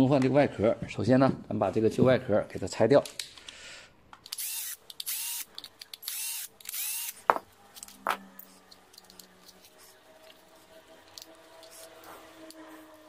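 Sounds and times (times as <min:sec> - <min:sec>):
power screwdriver whirring: 0:04.3 - 0:07.3.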